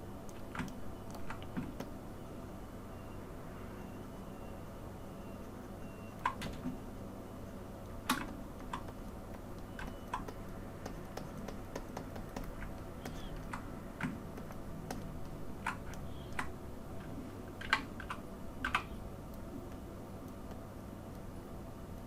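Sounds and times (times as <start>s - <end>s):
faint steady hum: 0.0s - 22.0s
computer keys clicking: 0.2s - 1.9s, 7.8s - 21.4s.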